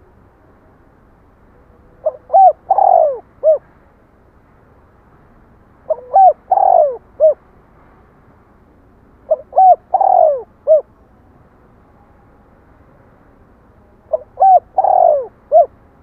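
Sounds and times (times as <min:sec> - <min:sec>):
dove cooing: 0:02.0 - 0:03.7, 0:05.9 - 0:07.4, 0:09.3 - 0:10.9, 0:14.1 - 0:15.8.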